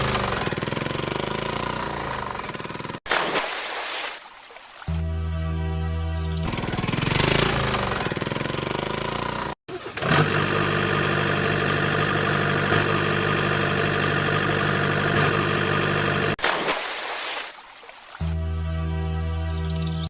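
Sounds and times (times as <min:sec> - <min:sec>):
vehicle engine running: 0:00.0 - 0:03.0, 0:06.2 - 0:16.4.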